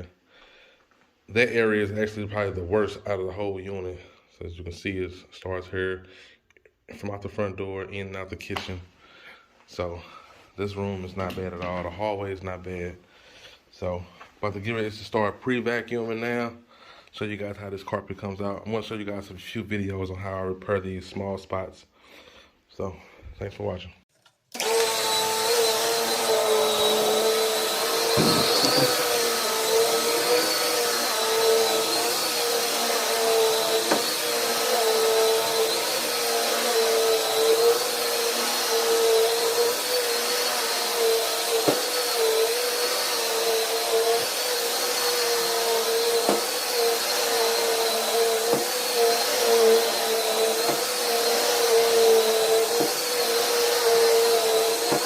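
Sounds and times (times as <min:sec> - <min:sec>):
vacuum cleaner running on carpet: 0:24.6 - 0:55.0.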